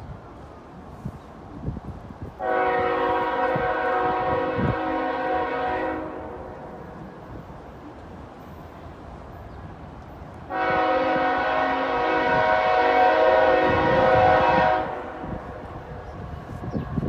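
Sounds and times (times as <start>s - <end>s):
locomotive air horn blast: 2.4s - 6.8s, 10.5s - 15.9s.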